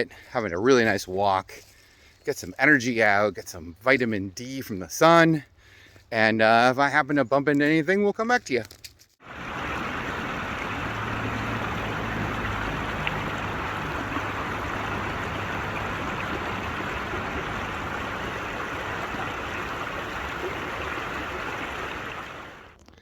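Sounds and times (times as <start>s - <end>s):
water flowing over rocks: 9.2s - 22.8s.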